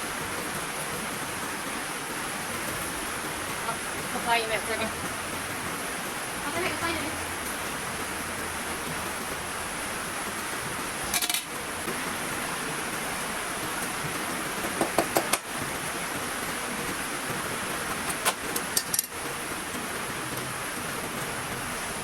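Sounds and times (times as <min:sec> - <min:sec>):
heavy rain: 0:00.0 - 0:22.0
dishes and utensils clinking: 0:11.1 - 0:11.5.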